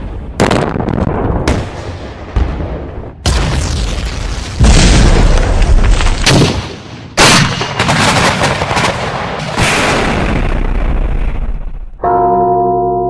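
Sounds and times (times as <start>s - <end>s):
cartoon explosion booms: 0.0s - 7.6s, 9.6s - 12.0s.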